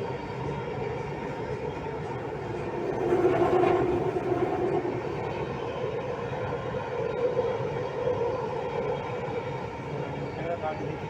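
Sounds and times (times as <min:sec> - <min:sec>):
train rumble from inside car: 0:01.1 - 0:07.6.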